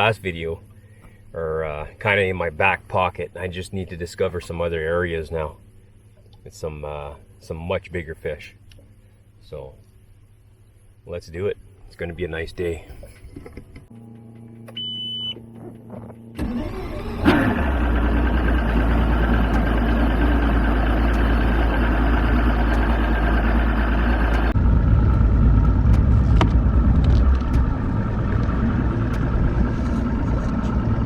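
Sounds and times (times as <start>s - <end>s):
outboard motor running: 13.9s - 31.0s
short electronic beep: 14.7s - 15.5s.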